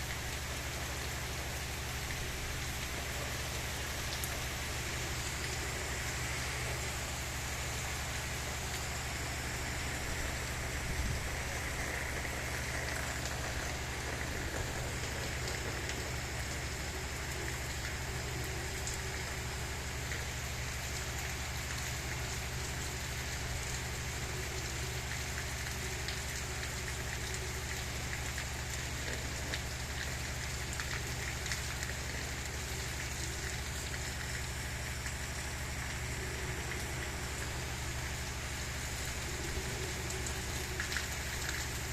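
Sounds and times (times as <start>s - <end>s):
steady low hum: 0.0s - 24.4s
steady rain falling: 0.0s - 41.9s.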